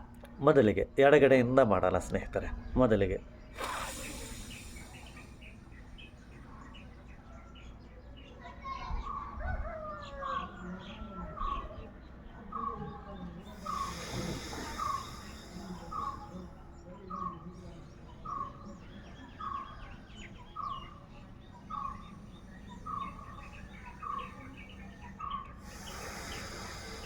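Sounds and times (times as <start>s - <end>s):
person breathing through nose: 3.6s - 6.2s, 13.4s - 16.6s, 18.8s - 27.0s
high bird chirps: 13.5s - 27.0s.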